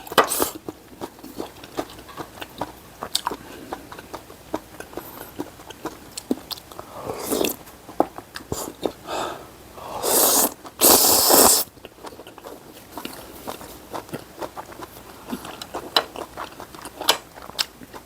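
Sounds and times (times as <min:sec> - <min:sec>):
wet chewing: 0:00.0 - 0:09.1, 0:10.0 - 0:18.0
slurping noodles: 0:06.8 - 0:07.6, 0:09.8 - 0:11.7.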